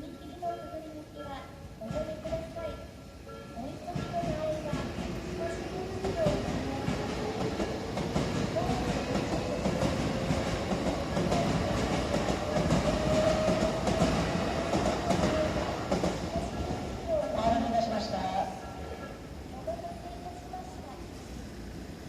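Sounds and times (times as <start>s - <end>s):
rising whine of train: 0.0s - 22.0s
train wheels on rails: 0.0s - 22.0s
clacking over rail joints: 3.7s - 17.7s.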